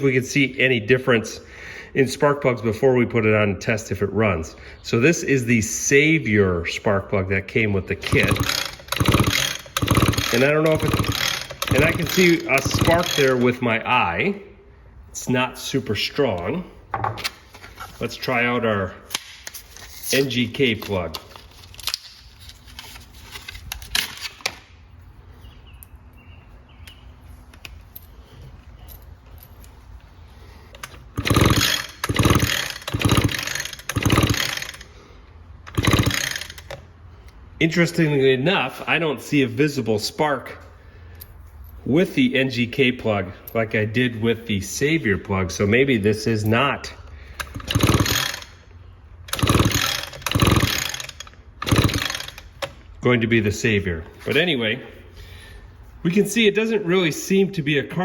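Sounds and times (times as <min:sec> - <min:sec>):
recoil starter rope pulled: 0:07.9 - 0:13.8, 0:30.6 - 0:36.9, 0:47.2 - 0:52.8
engine spinning over rasp: 0:08.0 - 0:13.4, 0:31.1 - 0:34.8, 0:35.7 - 0:36.7, 0:47.4 - 0:48.5, 0:49.3 - 0:52.5.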